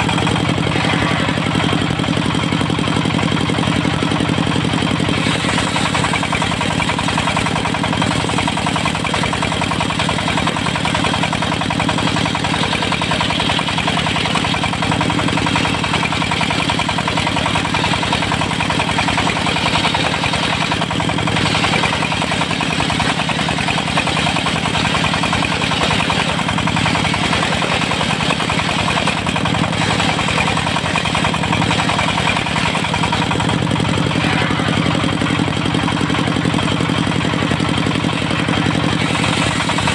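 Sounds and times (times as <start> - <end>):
diesel engine running: 0.0 - 39.9
circular saw ripping wood: 5.1 - 11.5, 15.5 - 33.4, 38.8 - 39.9.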